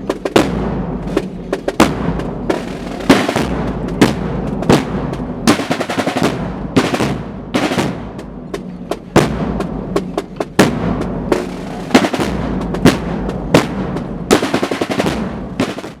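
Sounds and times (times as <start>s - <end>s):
low drum beat: 0.0s - 16.0s
rolling snare drums: 0.0s - 16.0s.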